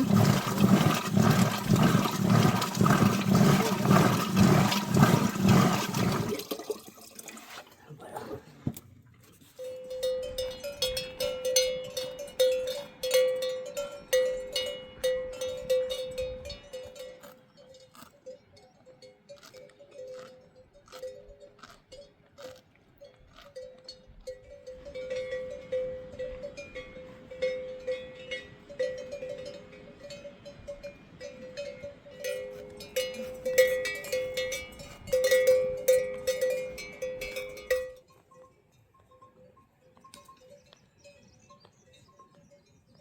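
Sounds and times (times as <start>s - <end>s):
metal bell clanking: 9.6s - 17.2s, 23.9s - 42.6s.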